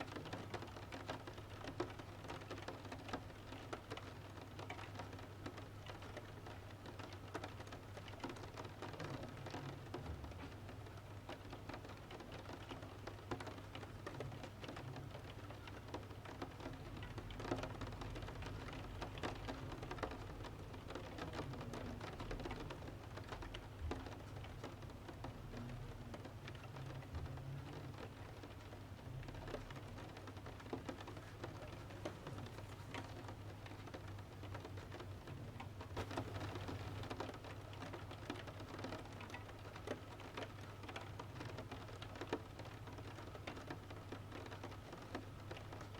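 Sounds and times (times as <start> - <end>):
rain pattering on a window: 0.0 - 45.9
wood fire crackling in a stove: 28.7 - 45.7.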